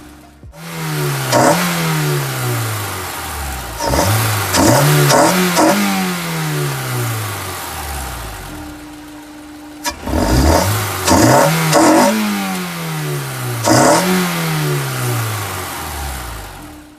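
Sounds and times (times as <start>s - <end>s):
car engine revving: 0.0s - 16.9s.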